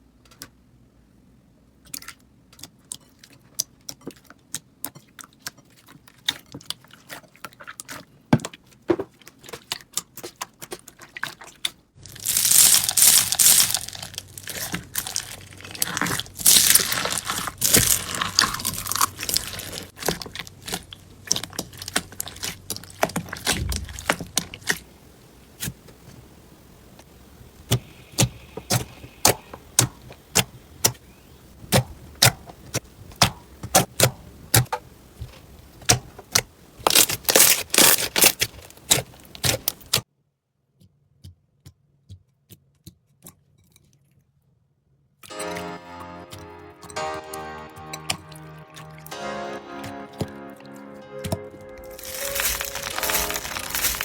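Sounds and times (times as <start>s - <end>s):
slime clicking and crackling: 9.2s - 24.9s, 31.7s - 40.0s, 51.2s - 54.0s.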